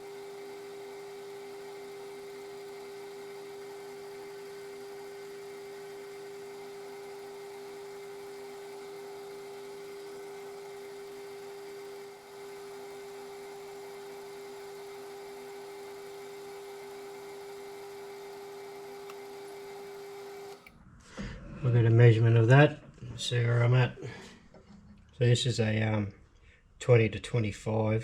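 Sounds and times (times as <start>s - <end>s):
metal lathe whining: 0.0s - 20.8s.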